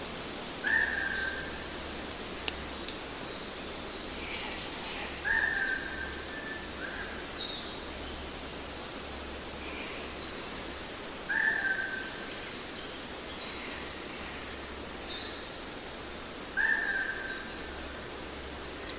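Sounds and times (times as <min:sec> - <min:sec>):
background hiss: 0:00.0 - 0:18.9.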